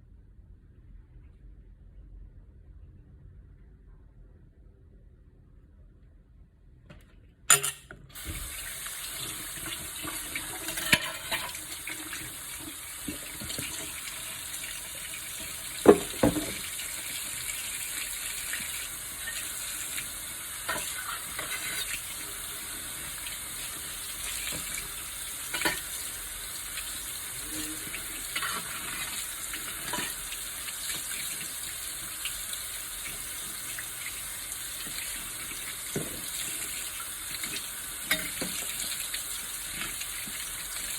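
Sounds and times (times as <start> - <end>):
tap water running: 8.1 - 40.9.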